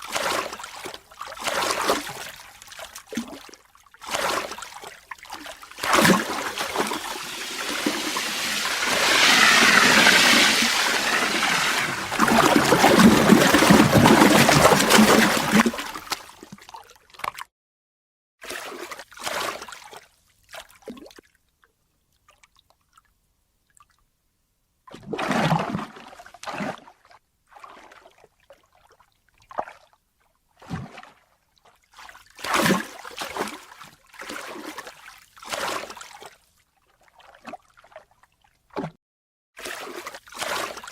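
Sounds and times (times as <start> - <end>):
water splashes and slaps: 0.0 - 17.5, 18.4 - 21.3, 30.6 - 36.4, 39.6 - 40.9
ocean wave rushing: 5.9 - 15.5.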